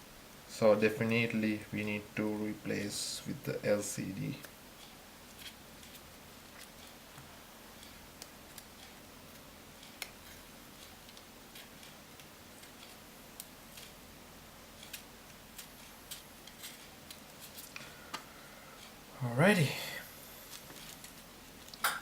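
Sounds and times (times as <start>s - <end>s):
quiet steady hiss: 0.0s - 22.0s.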